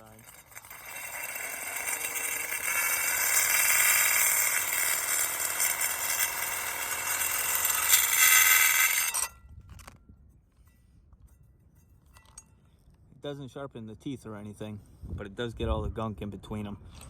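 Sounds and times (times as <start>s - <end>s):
power drill grinding shingle: 0.0s - 10.0s.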